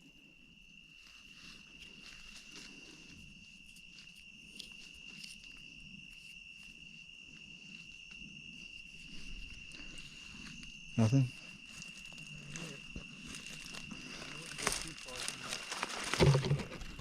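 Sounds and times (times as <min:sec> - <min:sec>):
insect chorus drone: 0:00.0 - 0:17.0
ticks and rustles in brush: 0:13.3 - 0:17.0.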